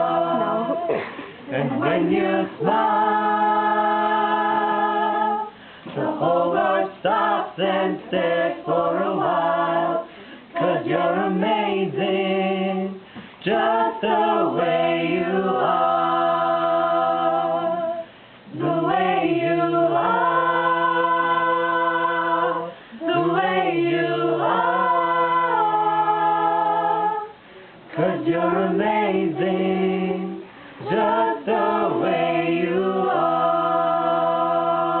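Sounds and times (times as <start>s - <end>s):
choir singing a cappella: 0.0s - 35.0s.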